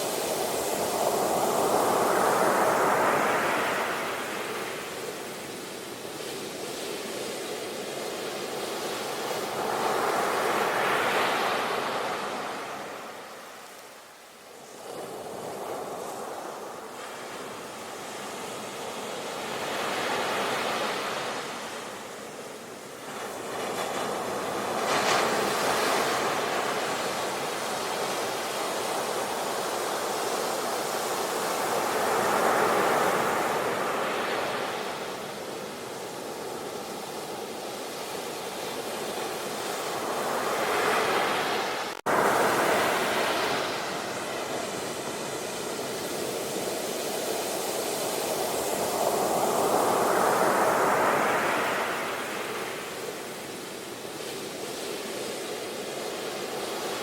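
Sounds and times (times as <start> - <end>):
ocean waves breaking on shore: 0.0 - 57.0.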